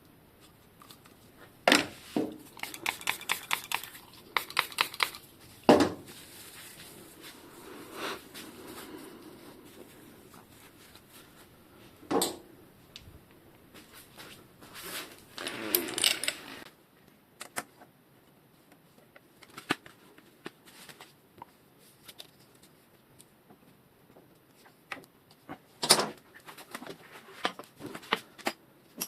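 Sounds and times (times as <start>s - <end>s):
light clicks and taps of tools: 2.6s - 5.2s.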